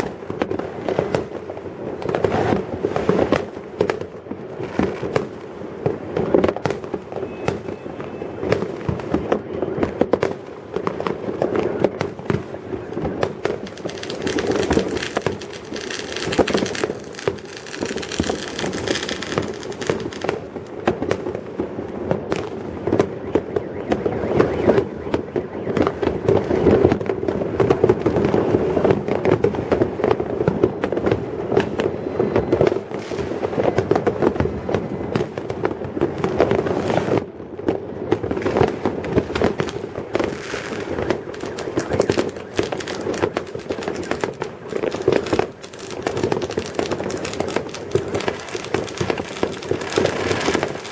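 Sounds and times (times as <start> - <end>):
fireworks bangs and pops: 0.0 - 50.9
hissing crackle: 12.0 - 20.8, 38.4 - 50.9.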